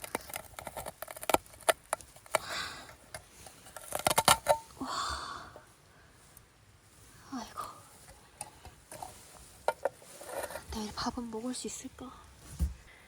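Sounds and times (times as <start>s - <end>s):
short rustles: 5.6s - 13.0s.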